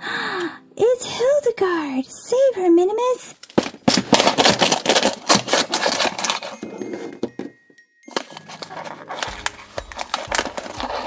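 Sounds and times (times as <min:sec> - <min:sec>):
plastic toy pieces clattering: 0:03.4 - 0:07.5, 0:08.1 - 0:11.0.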